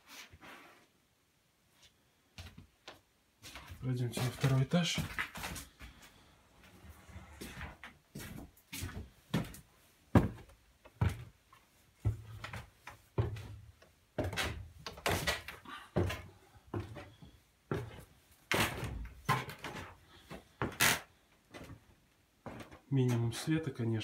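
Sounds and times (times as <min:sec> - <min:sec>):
heavy footsteps climbing stairs: 0:07.4 - 0:11.4.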